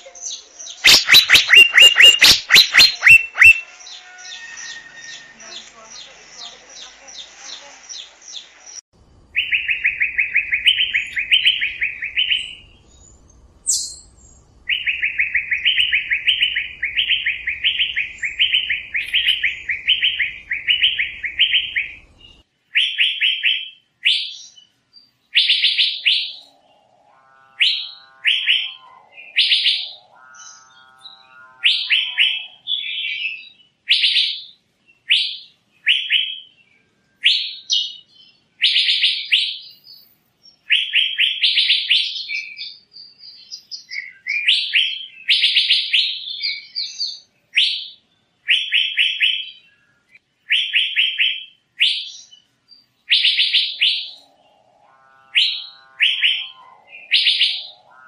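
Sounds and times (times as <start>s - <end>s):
bird whistling calls: 0.0s - 5.7s, 9.4s - 12.7s, 14.7s - 22.0s, 27.6s - 34.4s, 53.1s - 54.4s, 55.2s - 58.0s
low buzzy bird calls: 0.0s - 58.0s.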